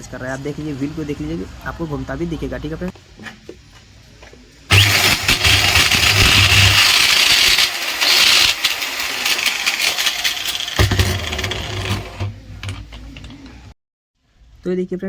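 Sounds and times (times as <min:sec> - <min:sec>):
angle grinder whining: 0:04.7 - 0:12.3.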